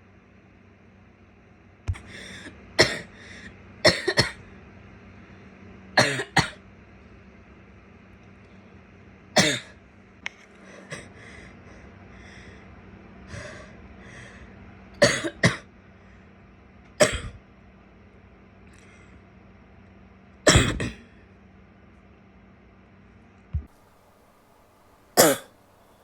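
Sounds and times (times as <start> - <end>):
woman coughing: 2.8 - 3.1, 3.9 - 4.4, 6.0 - 6.6, 9.4 - 9.7, 15.0 - 15.6, 17.0 - 17.4, 20.5 - 21.1, 25.2 - 25.5.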